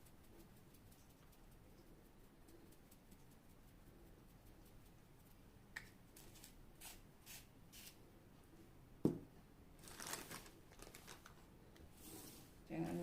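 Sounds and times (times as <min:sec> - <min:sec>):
rustling: 0:09.8 - 0:12.7.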